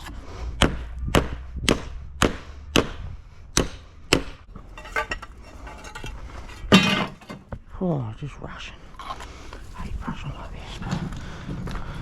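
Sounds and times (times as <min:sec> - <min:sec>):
light knocks and clinks: 0:04.6 - 0:07.6.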